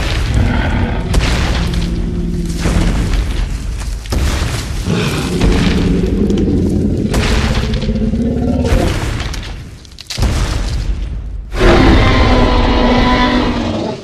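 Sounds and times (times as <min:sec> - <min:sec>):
deep rumbling dinosaur roar: 0:00.2 - 0:03.1, 0:04.8 - 0:09.0, 0:11.5 - 0:14.0.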